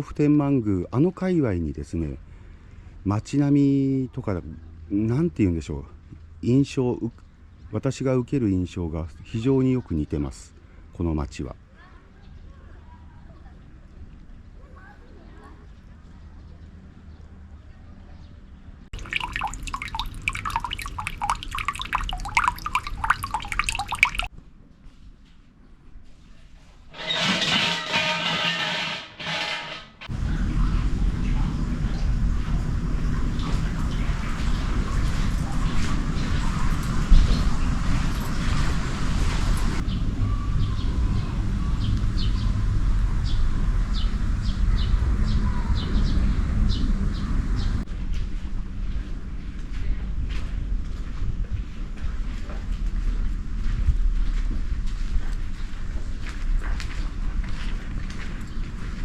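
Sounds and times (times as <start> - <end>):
small birds chirping: 19.0 - 24.3, 33.0 - 47.8
water dripping into water: 19.0 - 24.3, 30.1 - 39.8
low outdoor rumble: 30.0 - 59.0.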